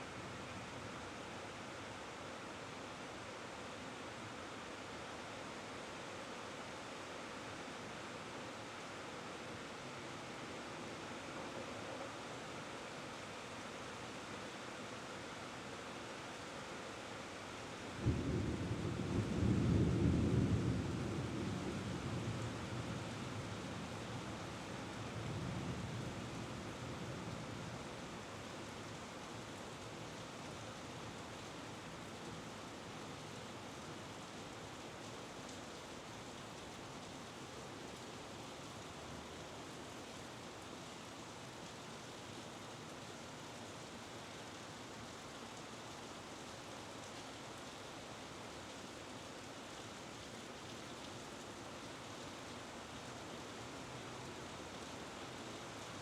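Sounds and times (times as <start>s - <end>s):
steady rain falling: 0.0s - 56.0s
thunder rumbling: 18.0s - 22.5s.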